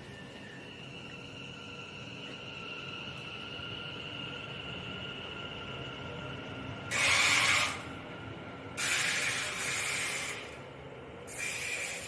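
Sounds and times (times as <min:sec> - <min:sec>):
air hissing from train brakes: 0:06.9 - 0:07.9, 0:08.8 - 0:10.6, 0:11.3 - 0:12.0.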